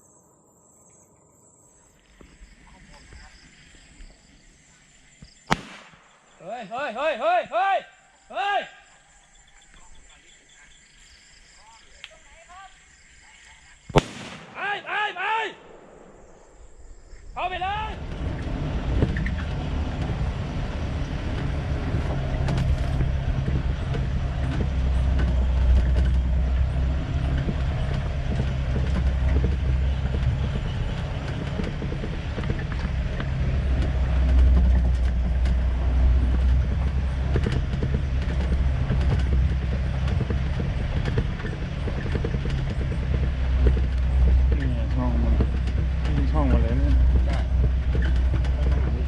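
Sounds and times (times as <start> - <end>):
vehicle engine droning: 0.8 - 49.0
knocks and rattles: 17.8 - 49.0.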